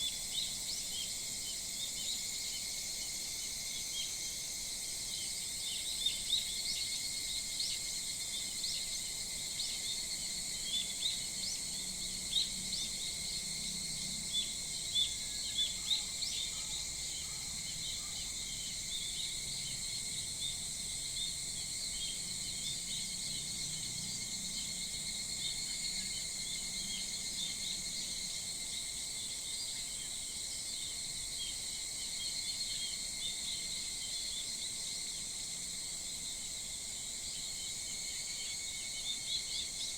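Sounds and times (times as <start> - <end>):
high insect drone: 0.0 - 39.9.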